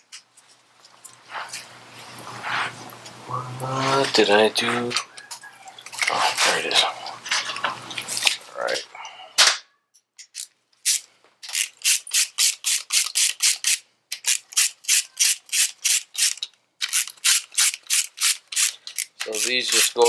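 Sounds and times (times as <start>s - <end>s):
ratchet wrench clicking: 10.4s - 20.0s.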